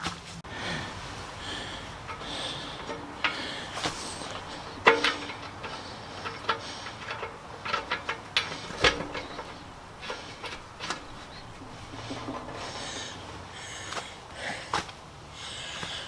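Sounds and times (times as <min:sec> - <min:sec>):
metal clinks and knocks: 0:01.2 - 0:13.5.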